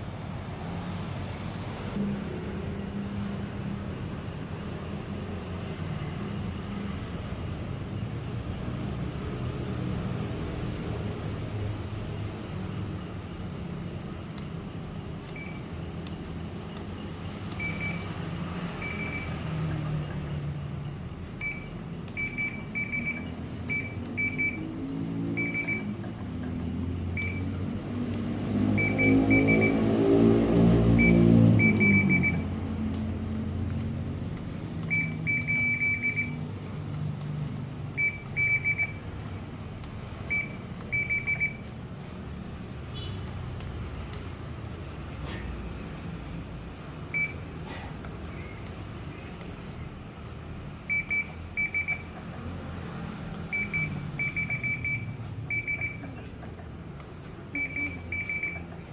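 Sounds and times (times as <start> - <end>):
low engine drone: 1.7 - 5.4.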